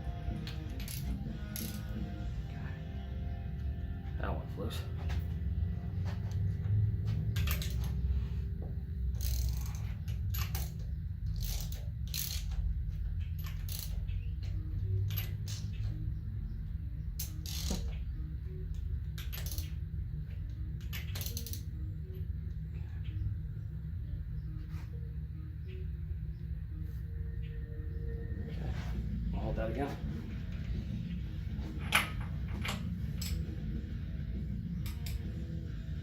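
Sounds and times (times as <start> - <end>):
steady low hum: 0.0 - 36.0
light metallic clicks and clinks: 15.0 - 15.9, 34.8 - 35.4.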